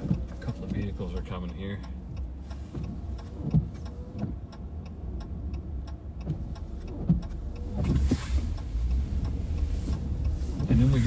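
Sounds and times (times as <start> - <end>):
car engine and tyre rumble: 0.0 - 11.0
turn-signal indicator clicking: 0.0 - 11.0.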